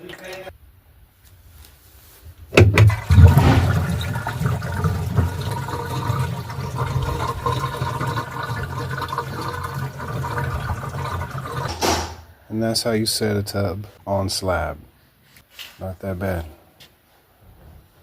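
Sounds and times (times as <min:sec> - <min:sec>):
water rushing and draining: 0:02.6 - 0:12.2.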